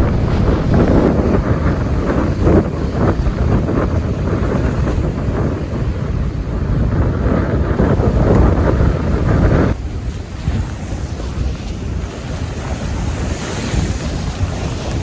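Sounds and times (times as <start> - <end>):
stormy sea surf: 0.0 - 15.0
wind buffeting microphone: 0.0 - 15.0.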